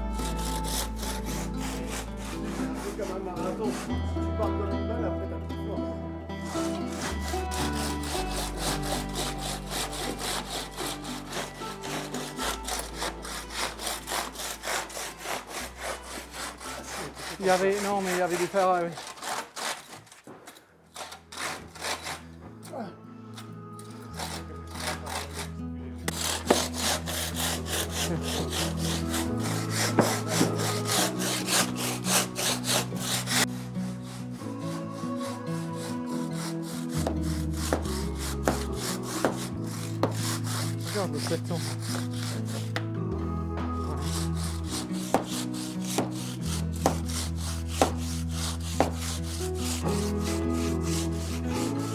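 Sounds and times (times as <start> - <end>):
handsaw rasping on stone: 0.0 - 4.1, 6.4 - 22.4, 23.8 - 25.5, 26.1 - 42.8, 43.8 - 51.9.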